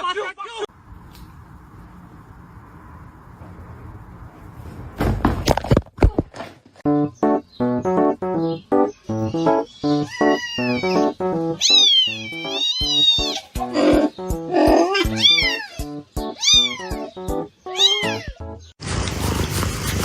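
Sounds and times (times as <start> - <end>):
keyboard music with beat: 6.9 - 18.7
cat meowing: 9.2 - 15.8, 16.4 - 18.4.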